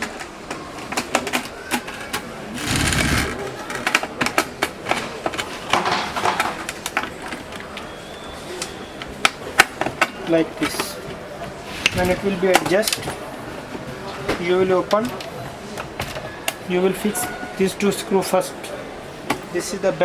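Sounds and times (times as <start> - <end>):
rattling noise: 2.5 - 3.5.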